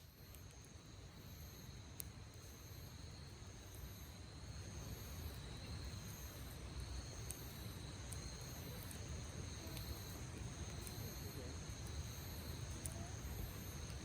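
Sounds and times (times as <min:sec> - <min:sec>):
campfire crackles: 0:00.0 - 0:14.0
crickets trilling: 0:00.0 - 0:14.0.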